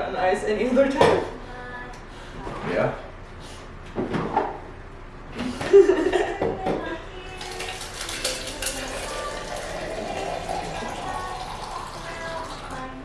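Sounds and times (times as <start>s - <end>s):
drink being poured: 7.4s - 13.0s
glassware and dishes clinking: 7.6s - 12.6s.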